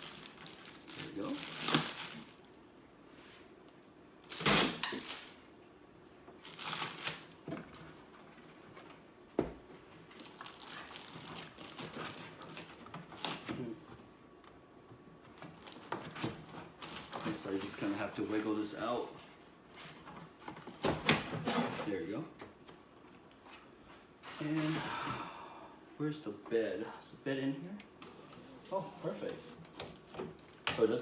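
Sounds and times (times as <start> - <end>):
packing material rustling: 0.0 - 2.6, 4.2 - 5.4, 6.4 - 7.4, 10.1 - 13.4, 15.5 - 17.8.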